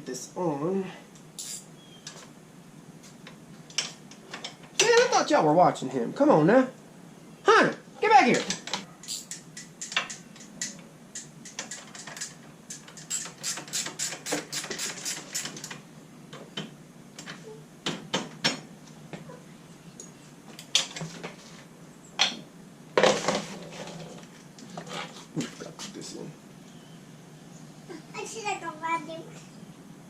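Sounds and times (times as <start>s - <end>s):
metallic clicking of hand tools: 8.5s - 15.8s.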